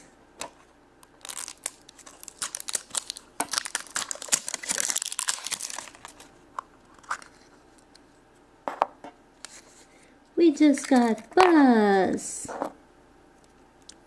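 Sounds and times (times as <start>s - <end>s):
plastic wrapper crinkling and tearing: 1.0s - 7.6s.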